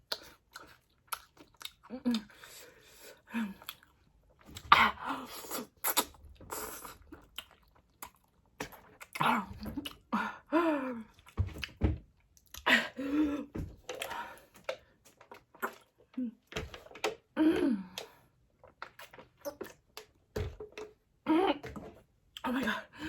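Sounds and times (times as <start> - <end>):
person chewing noodles: 0.0 - 4.7, 5.3 - 10.1, 13.8 - 16.2, 17.9 - 21.0
breathy gasps: 22.6 - 23.0.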